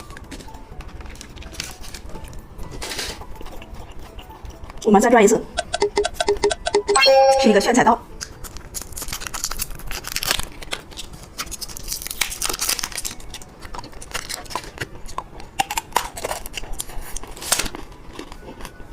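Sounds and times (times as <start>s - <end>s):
plastic packaging crinkling and tearing: 0.0s - 3.2s, 8.2s - 18.8s.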